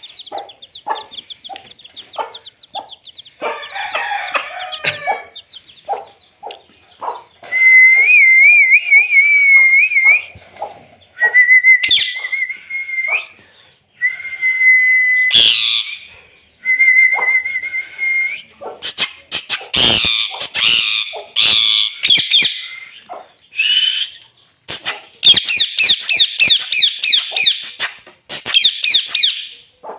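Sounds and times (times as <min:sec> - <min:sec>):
parrot whistling: 0:07.5 - 0:10.3, 0:11.2 - 0:13.4, 0:14.0 - 0:29.5
harsh parrot calls: 0:11.2 - 0:13.4, 0:15.2 - 0:16.2, 0:18.8 - 0:29.9
short clicks: 0:25.9 - 0:28.6.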